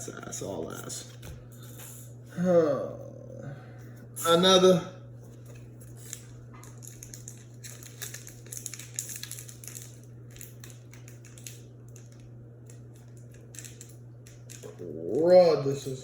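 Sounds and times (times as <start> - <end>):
steady low hum: 0.0 - 16.0
foil wrapper crinkling: 5.3 - 14.7.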